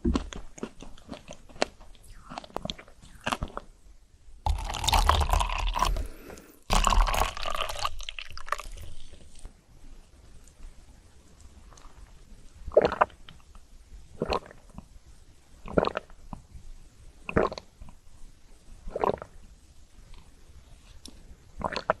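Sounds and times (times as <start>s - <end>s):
wet mouth eating sounds: 0.0s - 3.7s, 4.4s - 9.5s, 21.1s - 22.0s.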